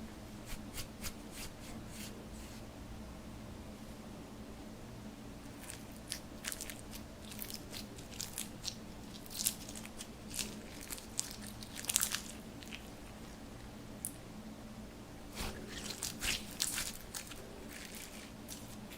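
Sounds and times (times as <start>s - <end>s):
steady low hum: 0.0s - 18.9s
slime crackling and popping: 5.5s - 12.9s, 15.4s - 18.9s.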